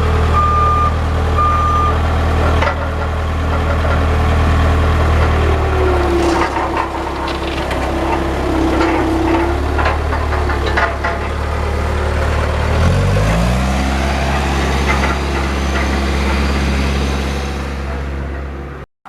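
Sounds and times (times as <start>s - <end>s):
engine running: 0.0s - 18.8s
clanks: 5.1s - 13.3s, 14.2s - 18.6s.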